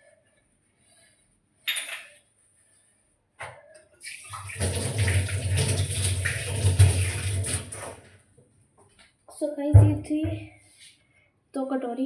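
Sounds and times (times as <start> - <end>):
tap water running into bowl: 4.2 - 8.0
knock or splash: 4.6 - 8.0.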